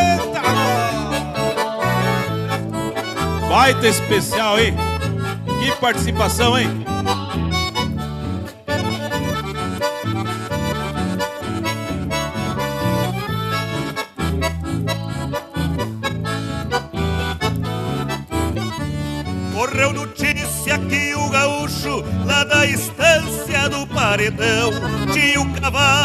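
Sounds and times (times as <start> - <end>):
accordion melody: 0.0 - 26.0
guitar: 0.0 - 26.0
rhythmic bass line: 0.0 - 26.0.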